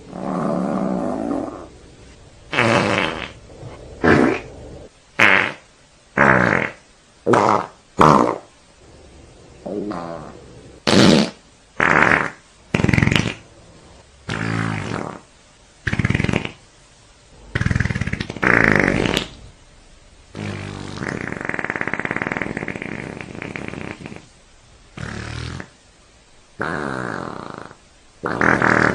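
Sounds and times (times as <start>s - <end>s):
buzzy fart sound effects: 2.5s - 8.5s, 9.6s - 13.5s, 14.2s - 16.6s, 17.4s - 19.6s, 20.3s - 24.3s, 25.0s - 25.8s, 26.6s - 28.9s.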